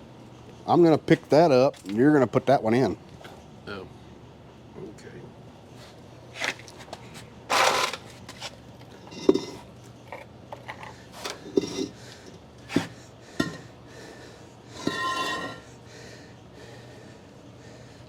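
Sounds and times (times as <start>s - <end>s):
ringing metal scrape: 14.7s - 15.7s
metal tools clinking: 14.8s - 15.6s.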